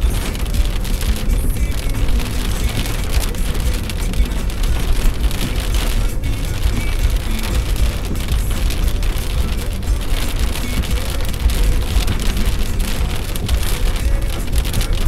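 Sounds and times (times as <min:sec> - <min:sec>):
constant low rumble: 0:00.0 - 0:15.0
heavy rain falling: 0:00.0 - 0:15.0.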